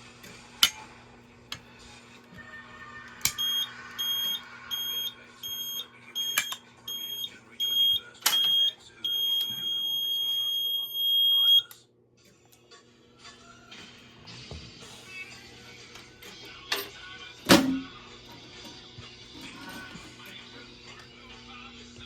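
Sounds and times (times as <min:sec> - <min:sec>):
fire alarm horn tone: 0:03.3 - 0:11.7.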